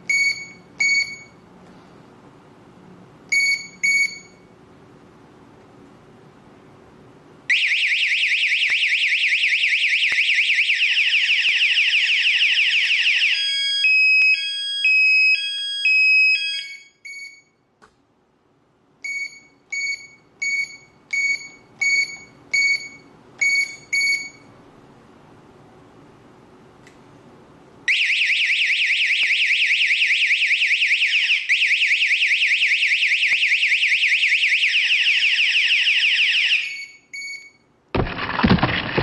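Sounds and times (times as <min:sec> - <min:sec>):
security alarm siren: 0:07.5 - 0:17.5, 0:27.9 - 0:37.6.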